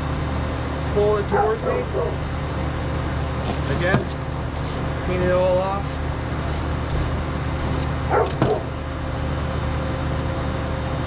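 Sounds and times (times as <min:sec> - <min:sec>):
electric air blower hum: 0:02.3 - 0:09.4.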